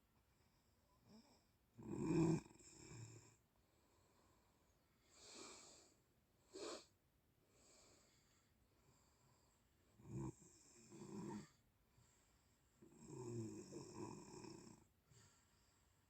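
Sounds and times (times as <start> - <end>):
person snoring: 1.8 - 3.4, 10.0 - 11.6, 12.9 - 14.9
person breathing: 3.6 - 10.0, 11.9 - 12.8, 15.0 - 16.0.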